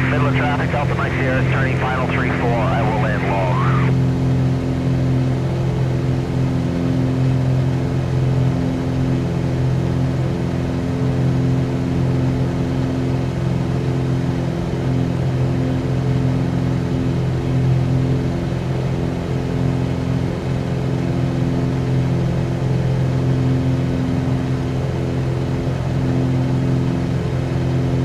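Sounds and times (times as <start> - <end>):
light aircraft engine drone in cockpit: 0.0 - 28.0.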